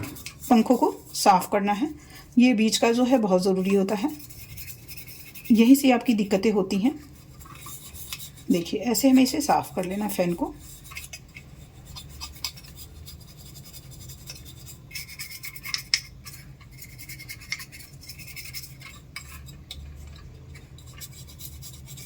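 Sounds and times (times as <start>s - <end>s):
toothbrush scrubbing plastic fan: 0.0s - 22.0s.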